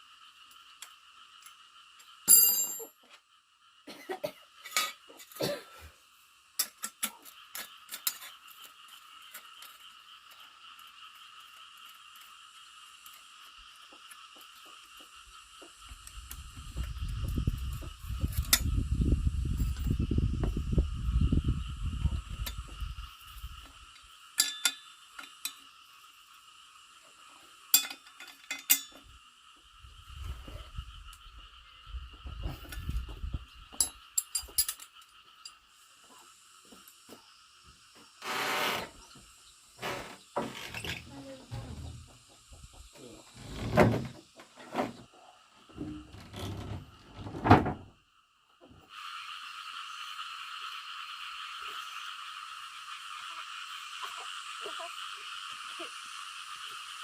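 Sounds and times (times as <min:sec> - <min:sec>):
frogs and insects chorus: 0:00.0 - 0:57.0
sharp metallic clink: 0:02.3 - 0:03.0, 0:24.4 - 0:25.6, 0:27.7 - 0:29.0.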